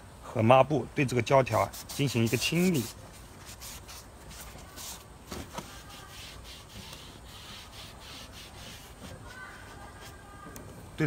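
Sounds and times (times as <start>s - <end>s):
cloth rubbing rubber seal: 1.6s - 10.2s.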